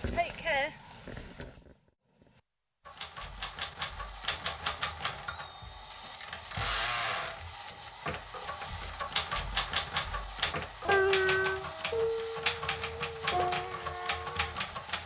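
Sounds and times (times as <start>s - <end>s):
typewriter carriage return rasp: 2.9s - 5.3s, 6.2s - 15.0s
typewriter keys clacking: 2.9s - 5.4s, 8.2s - 15.0s
typewriter bell ding: 5.2s - 6.4s, 10.8s - 15.0s.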